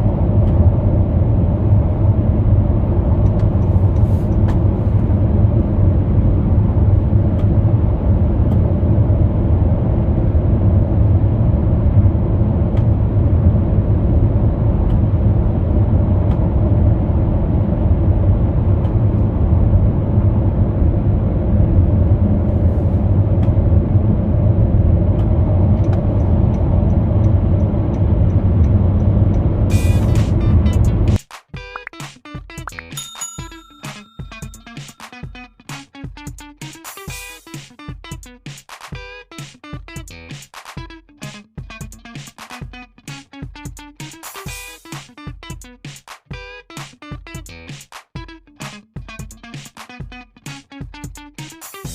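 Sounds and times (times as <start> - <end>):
car road and engine noise: 0.0 - 31.2.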